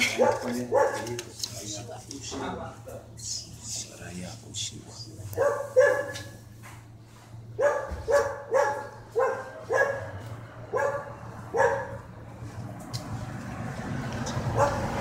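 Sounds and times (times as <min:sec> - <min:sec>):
dog barking: 0:00.0 - 0:01.2, 0:05.3 - 0:06.4, 0:07.6 - 0:12.0, 0:14.4 - 0:15.0.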